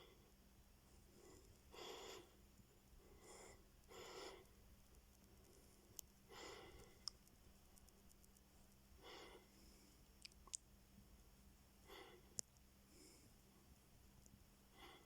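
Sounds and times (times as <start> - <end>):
faint clicks: 4.4 - 6.2, 6.8 - 8.8.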